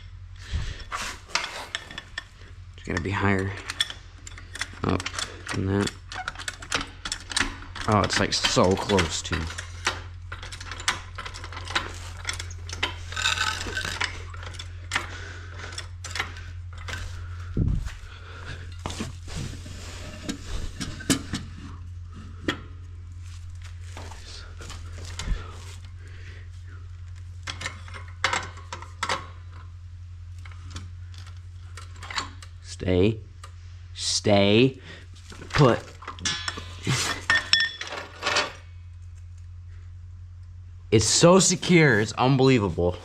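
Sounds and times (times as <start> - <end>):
steady low hum: 0.0 - 43.0
tools and metal parts clinking: 0.8 - 19.2, 23.2 - 26.0, 27.1 - 29.7, 30.3 - 32.7, 35.2 - 38.7.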